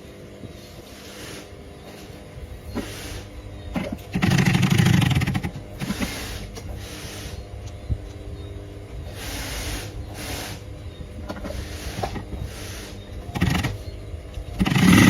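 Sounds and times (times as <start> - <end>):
quiet scraping noises: 0.5 - 4.1, 5.8 - 14.5
sewing machine stitching: 3.8 - 6.5, 13.3 - 13.8, 14.6 - 15.0.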